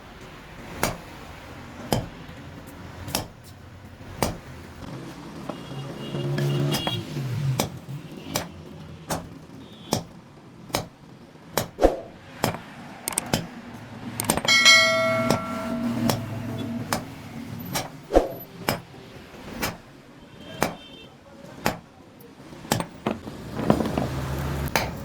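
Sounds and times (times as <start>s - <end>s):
hammer striking metal: 0.8s - 1.1s, 1.8s - 2.4s, 3.1s - 3.5s, 4.2s - 4.5s, 6.3s - 18.9s, 19.6s - 19.9s, 20.6s - 20.9s, 21.6s - 21.9s, 22.7s - 23.2s
ringing metallic clang: 14.3s - 18.0s.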